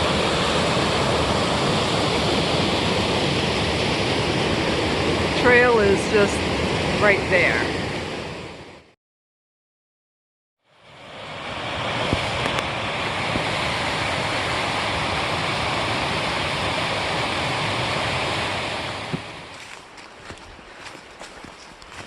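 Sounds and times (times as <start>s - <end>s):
water rushing down a cascade: 0.0s - 7.6s, 10.9s - 19.7s.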